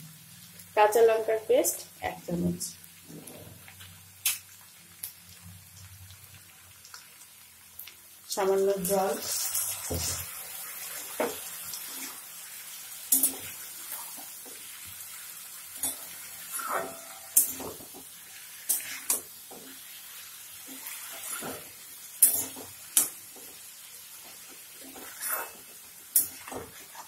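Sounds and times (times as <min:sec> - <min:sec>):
food sizzling in a pan: 0:00.0 - 0:27.0.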